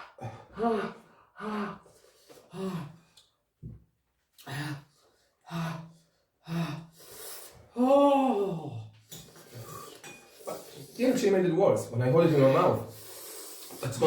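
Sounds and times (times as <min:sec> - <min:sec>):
person moaning: 0:00.6 - 0:01.8, 0:07.8 - 0:08.9
person gasping and exclaiming: 0:07.8 - 0:08.8.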